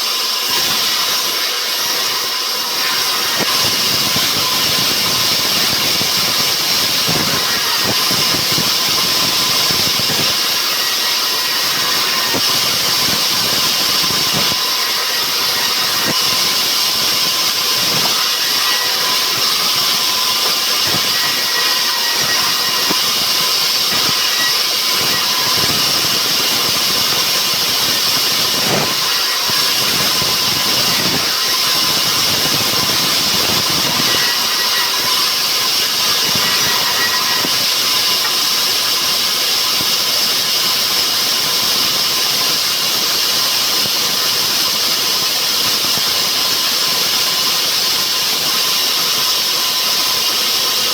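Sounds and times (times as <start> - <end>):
sawmill saw whining: 0.0 - 50.9.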